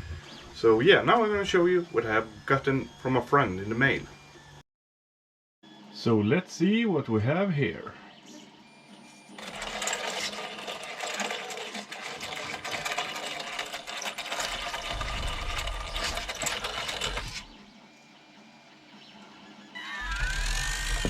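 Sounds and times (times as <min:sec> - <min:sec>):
three-d printer hum: 0:00.0 - 0:04.6, 0:05.6 - 0:06.0, 0:06.9 - 0:21.0.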